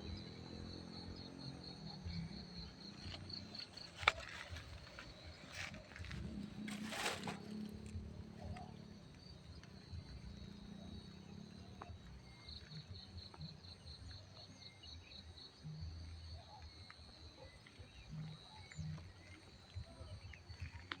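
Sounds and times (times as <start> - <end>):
insect chirps: 0.0 - 21.0.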